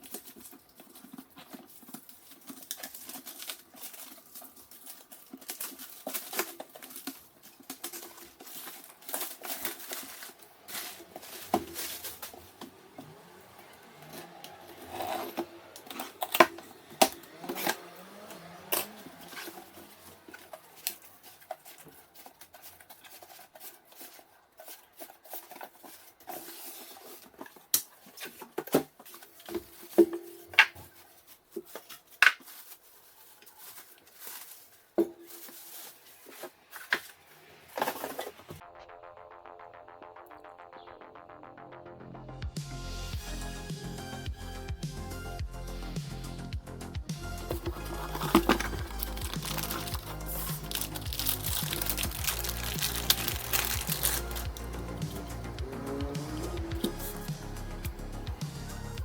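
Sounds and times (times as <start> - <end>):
hard objects clicking and tapping: 47.5 - 55.3.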